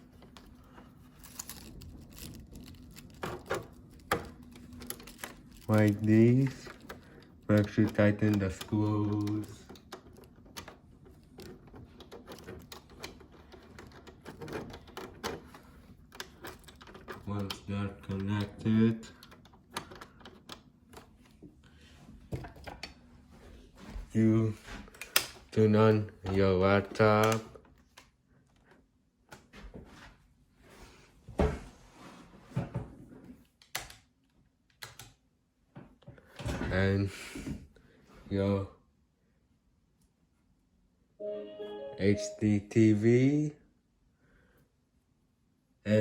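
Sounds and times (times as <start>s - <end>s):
cable connector clicks and rattles: 1.2s - 21.3s.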